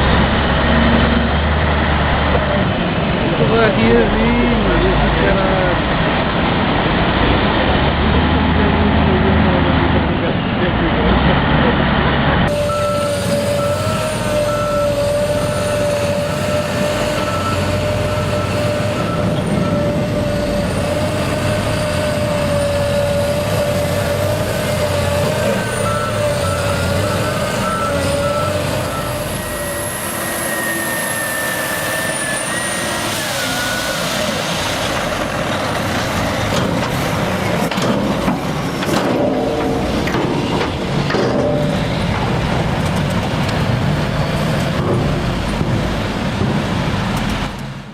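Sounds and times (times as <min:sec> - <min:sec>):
heavy construction machinery running: 0:00.0 - 0:47.9
reversing alarm beeping: 0:12.5 - 0:34.4.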